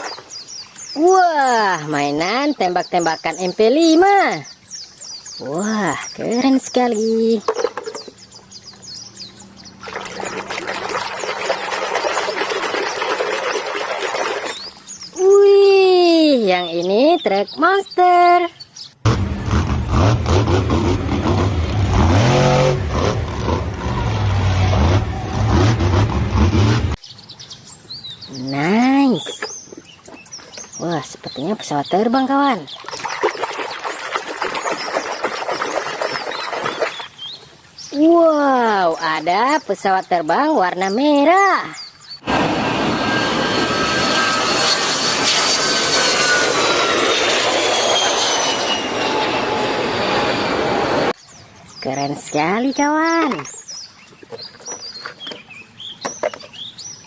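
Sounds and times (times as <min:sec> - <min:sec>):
big engine revving: 0:19.0 - 0:27.0
high whine falling in pitch: 0:42.2 - 0:51.1.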